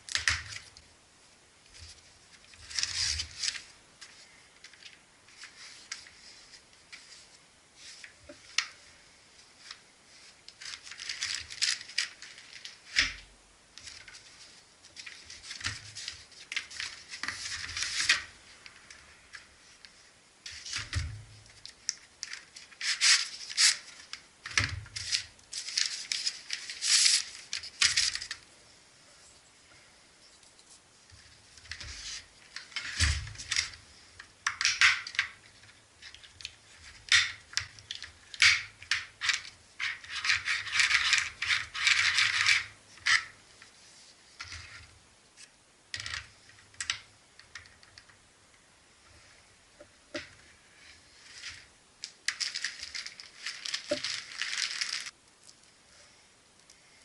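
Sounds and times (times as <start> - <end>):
packaging rustling and tearing: 1.8 - 6.6, 10.5 - 19.8, 20.5 - 28.4, 51.1 - 55.2.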